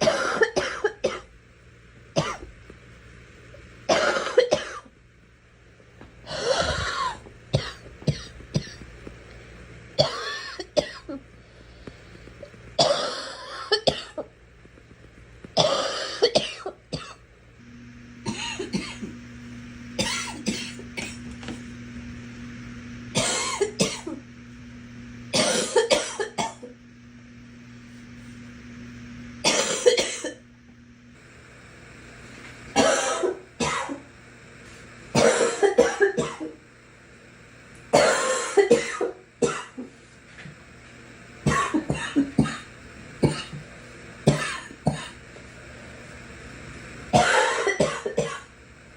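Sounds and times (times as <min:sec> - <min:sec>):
girl coughing: 0:00.0 - 0:01.3, 0:03.9 - 0:04.9, 0:06.3 - 0:08.8, 0:10.0 - 0:11.2, 0:12.8 - 0:14.3, 0:15.6 - 0:17.2, 0:18.3 - 0:19.1, 0:20.0 - 0:21.2, 0:23.2 - 0:24.2, 0:25.3 - 0:26.7, 0:29.4 - 0:30.4, 0:32.8 - 0:34.0, 0:35.2 - 0:36.6, 0:38.0 - 0:39.9, 0:41.5 - 0:43.6, 0:44.3 - 0:45.2, 0:47.2 - 0:48.5.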